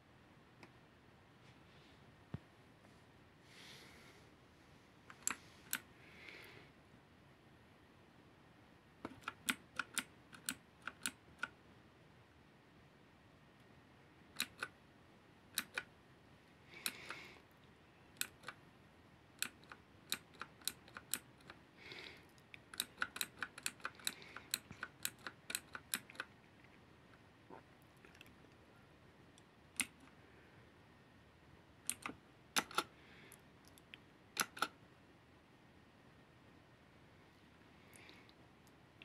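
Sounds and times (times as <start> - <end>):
mechanical keyboard clicks: 5.1 - 5.8, 9.0 - 11.6, 14.3 - 14.8, 15.5 - 15.9, 18.2 - 18.6, 19.4 - 21.6, 22.6 - 26.3, 29.8 - 30.1, 31.8 - 32.9, 34.4 - 34.8.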